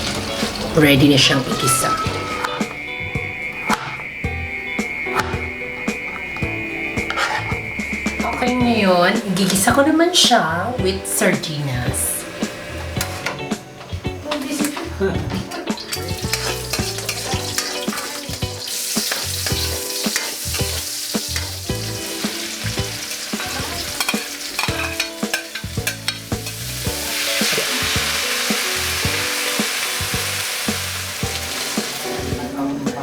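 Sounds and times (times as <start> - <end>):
oil sizzling in a pan: 0.0 - 33.0
utensil stirring and scraping pan: 7.0 - 8.5, 14.4 - 32.4.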